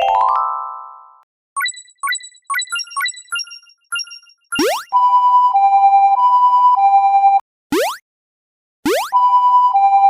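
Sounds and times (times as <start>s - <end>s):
two-tone crossing alarm: 1.7s - 7.4s, 9.1s - 10.0s.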